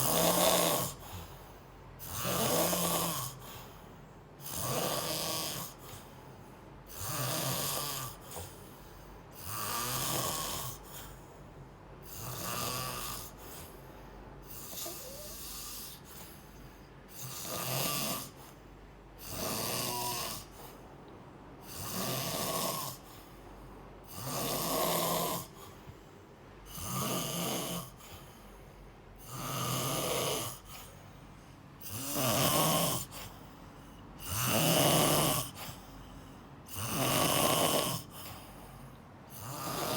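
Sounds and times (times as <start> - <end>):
person snoring: 0.0 - 1.4, 2.0 - 3.8, 4.4 - 6.0, 6.9 - 11.2, 12.0 - 13.8, 14.4 - 16.4, 17.1 - 18.6, 19.2 - 20.7, 21.6 - 23.3, 24.0 - 25.7, 26.6 - 28.4, 29.2 - 31.0, 31.8 - 38.6, 39.3 - 39.9.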